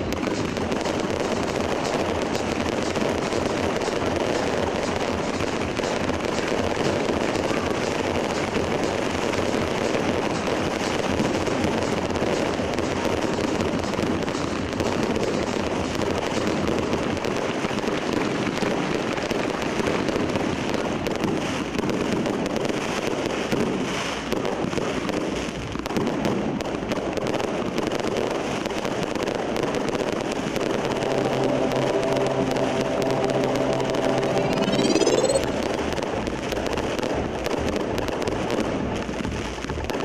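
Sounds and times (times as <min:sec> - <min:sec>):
fireworks crackling and popping: 0:00.0 - 0:40.0
fireworks rumble: 0:00.0 - 0:40.0
steady tone: 0:30.3 - 0:36.2.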